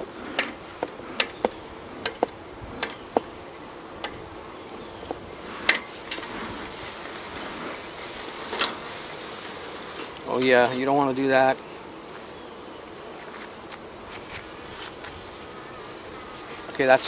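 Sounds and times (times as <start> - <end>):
bees buzzing: 0.0 - 17.0
sharp clicks and knocks: 0.3 - 3.4.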